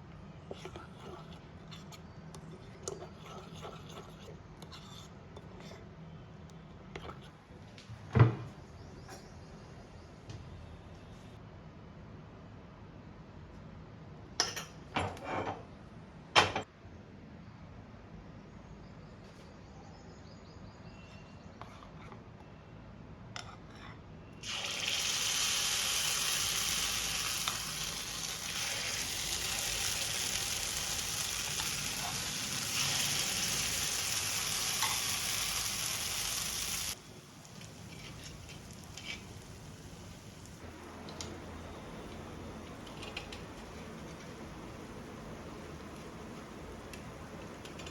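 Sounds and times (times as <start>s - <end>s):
water running from a tap: 24.4s - 37.0s.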